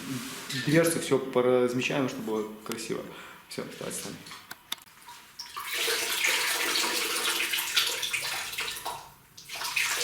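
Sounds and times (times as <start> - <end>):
water running and splashing: 3.8 - 10.0.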